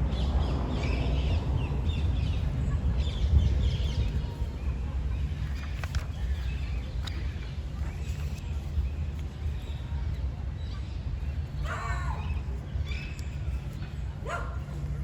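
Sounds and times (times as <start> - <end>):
wind on microphone: 0.0 - 7.0
dog barking: 14.2 - 14.7.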